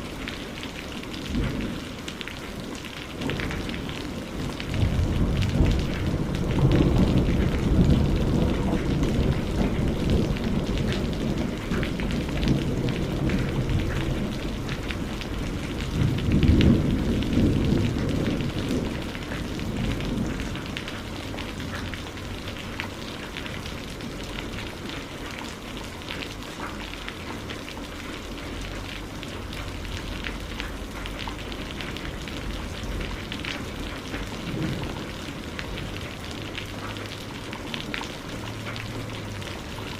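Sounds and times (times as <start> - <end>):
rain falling steadily: 0.0 - 39.9
rumble of thunder: 1.2 - 1.9, 3.2 - 25.0, 31.6 - 36.6.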